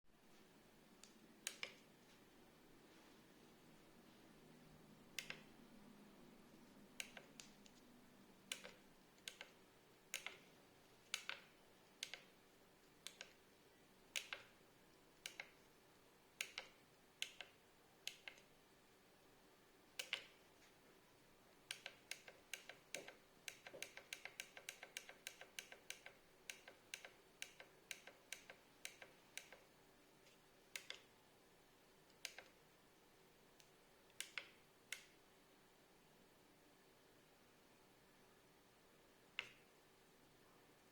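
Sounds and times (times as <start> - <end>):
keypad buttons clicking: 5.1 - 5.5, 7.0 - 7.8, 8.5 - 10.5.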